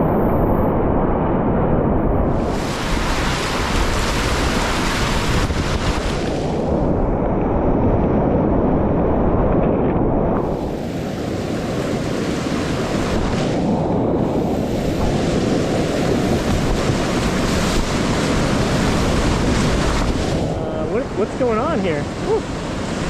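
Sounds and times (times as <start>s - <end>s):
wind buffeting microphone: 0.0s - 23.0s
whitewater rushing: 2.2s - 6.8s, 10.4s - 23.0s.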